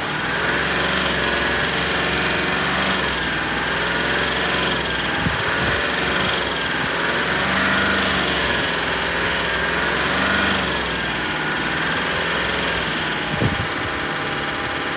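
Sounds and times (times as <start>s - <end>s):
diesel engine idling: 0.0s - 14.9s
engine knock or tap: 13.2s - 14.9s.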